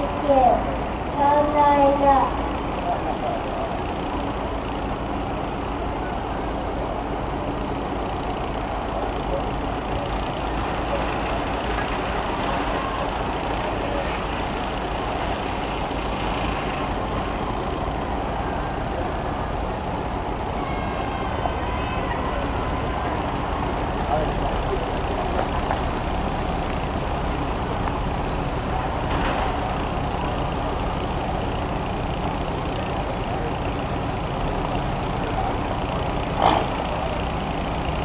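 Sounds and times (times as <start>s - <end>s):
bus engines running: 0.0s - 38.0s.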